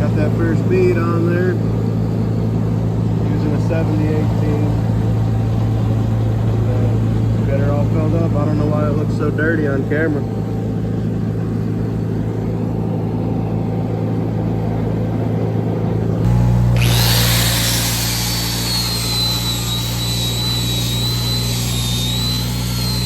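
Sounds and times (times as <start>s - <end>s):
engine running: 0.0s - 23.0s
angle grinder grinding steel: 16.3s - 23.0s.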